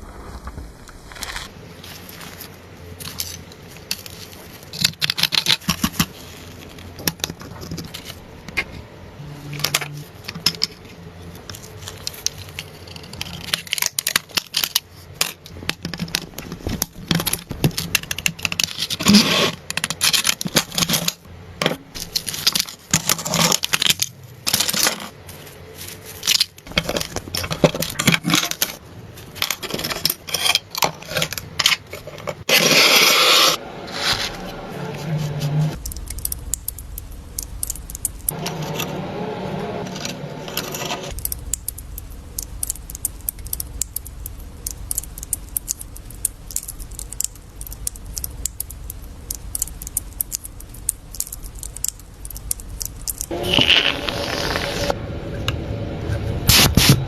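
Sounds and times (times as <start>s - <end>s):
scraping and rubbing: 0.0s - 15.3s, 16.3s - 21.3s, 21.9s - 36.6s, 37.2s - 41.6s, 44.5s - 55.0s
metallic tool clicks: 35.8s - 38.4s.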